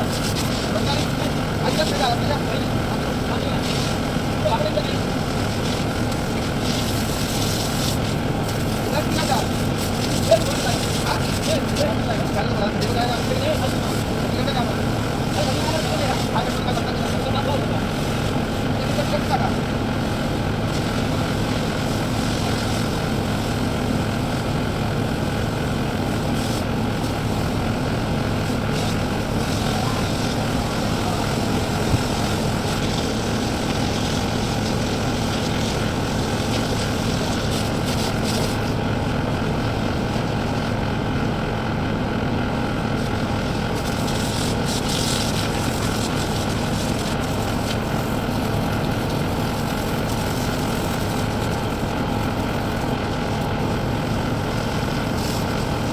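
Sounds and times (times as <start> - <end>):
engine droning steadily: 0.0 - 55.9.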